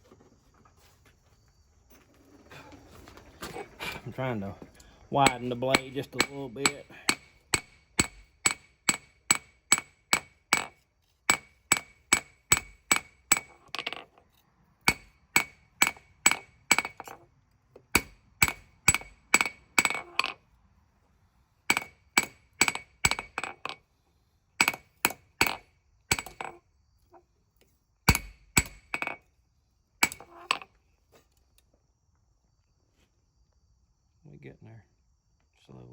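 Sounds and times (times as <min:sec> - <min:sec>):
hammer striking steel on anvil: 0:05.2 - 0:14.0, 0:14.8 - 0:17.2, 0:18.0 - 0:20.4, 0:21.7 - 0:23.6, 0:24.6 - 0:26.6, 0:28.1 - 0:29.2, 0:30.0 - 0:30.6.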